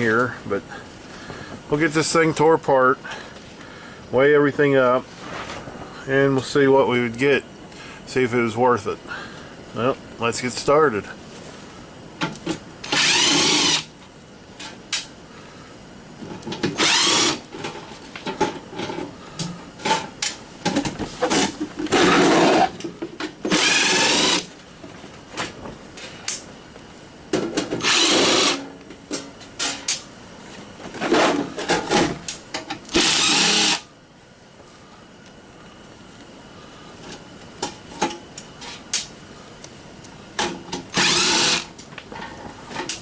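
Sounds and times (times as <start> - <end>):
power drill running: 12.8 - 13.9, 16.7 - 17.5, 22.0 - 22.7, 23.5 - 24.5, 27.8 - 28.7, 32.9 - 33.9, 40.9 - 41.7.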